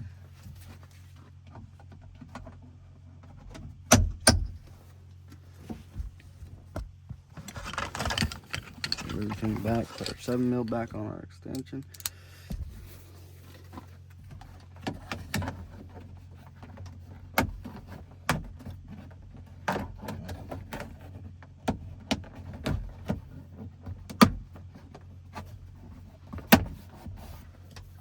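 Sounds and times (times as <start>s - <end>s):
hand tools clicking on metal: 7.6s - 10.9s, 11.5s - 12.2s.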